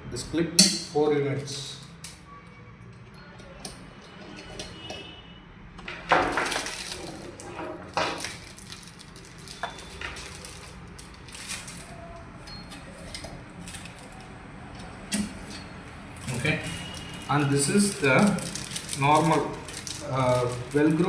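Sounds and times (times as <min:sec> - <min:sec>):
rustling bursts: 0:08.2 - 0:12.0, 0:16.2 - 0:21.0.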